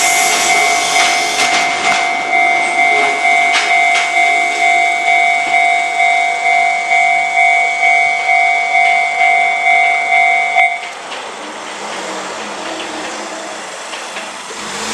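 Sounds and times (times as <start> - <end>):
level-crossing alarm ringing: 0.0 - 11.0
steady background noise: 0.0 - 14.9
alarm switch click: 0.2 - 11.0.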